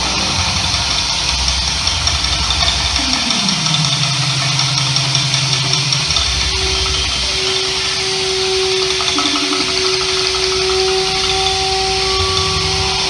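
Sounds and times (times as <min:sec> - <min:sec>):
constant hiss: 0:00.0 - 0:13.0
low pulsing hum: 0:01.6 - 0:13.0
higher steady tone: 0:02.5 - 0:13.0
gliding electronic tone: 0:02.7 - 0:13.0.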